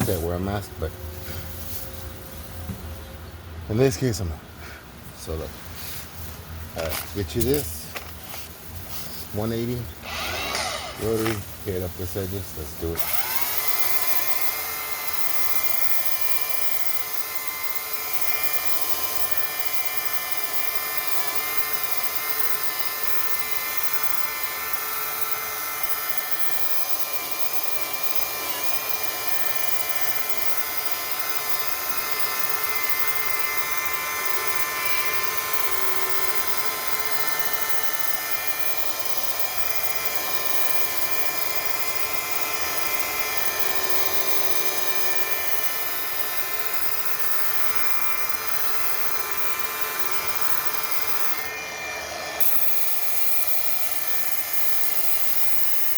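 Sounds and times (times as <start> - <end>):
rotary polisher motor whine: 10.0 - 11.5, 12.8 - 55.9.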